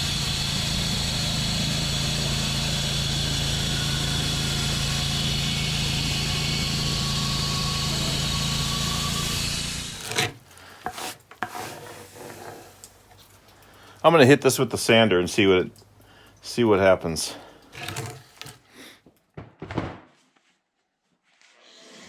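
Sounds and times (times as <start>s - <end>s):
band sawmill running: 0.0s - 13.2s, 17.7s - 18.6s.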